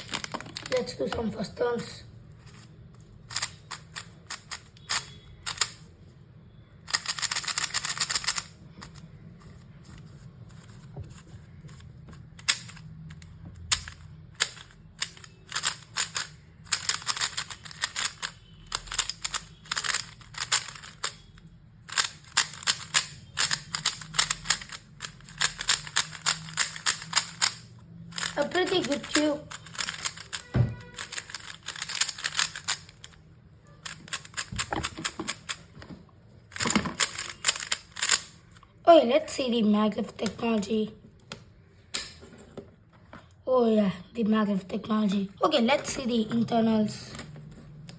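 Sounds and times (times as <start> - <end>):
puzzle cube layers clicking: 3.3 - 5.9, 6.9 - 9.0, 11.7 - 21.2, 21.9 - 30.4, 31.0 - 33.2, 33.8 - 35.6, 36.5 - 38.3.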